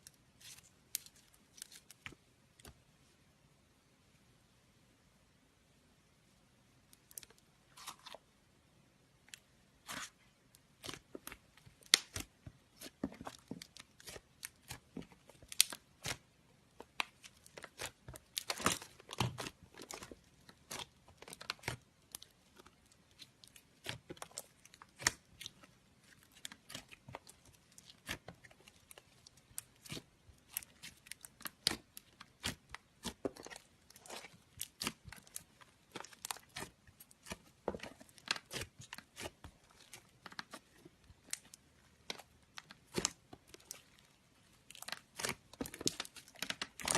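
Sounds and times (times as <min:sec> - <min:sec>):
slime popping and crackling: 0:10.8 - 0:16.2, 0:16.8 - 0:44.0, 0:44.7 - 0:46.9.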